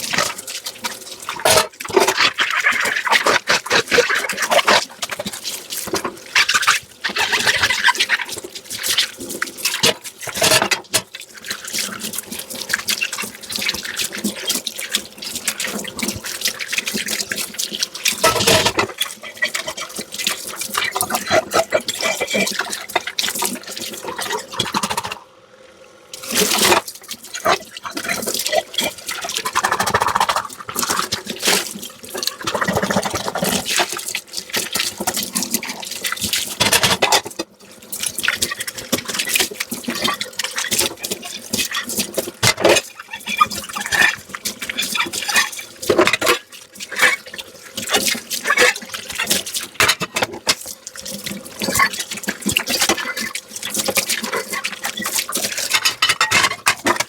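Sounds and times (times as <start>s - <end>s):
running tap water splashing: 0.0s - 25.2s, 26.1s - 57.0s
dishes and utensils clinking: 55.7s - 57.0s.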